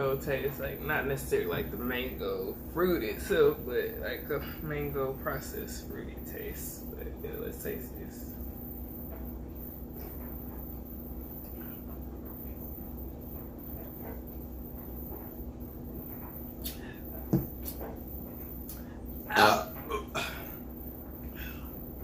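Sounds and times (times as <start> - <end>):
loud burp: 19.3 - 20.6.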